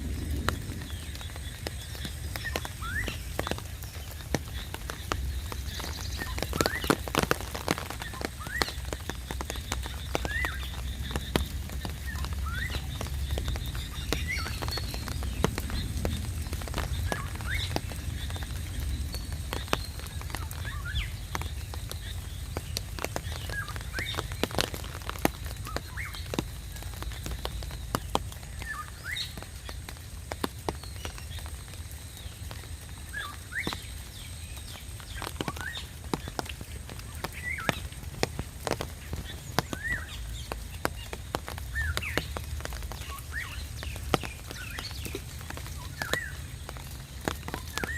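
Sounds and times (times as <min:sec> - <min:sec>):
low rumble: 0:00.0 - 0:02.5
rain dripping and pattering: 0:00.0 - 0:47.9.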